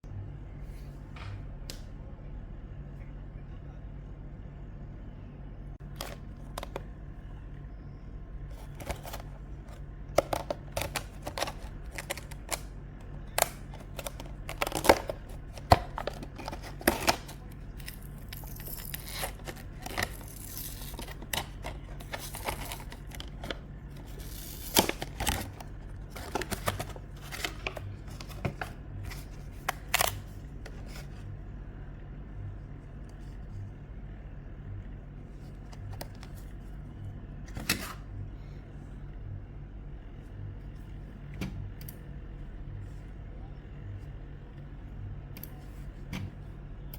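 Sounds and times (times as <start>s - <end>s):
steady low hum: 0.0s - 46.9s
packaging rustling: 8.5s - 12.7s, 13.3s - 31.1s
keycaps clicking and tapping: 10.1s - 12.6s.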